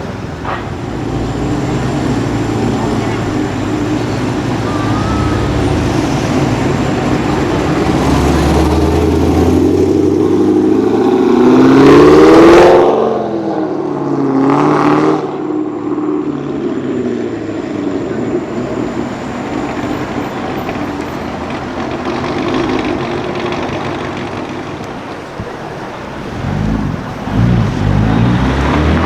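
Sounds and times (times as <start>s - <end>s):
road noise: 0.0s - 29.0s
sports car engine revving: 18.5s - 29.0s.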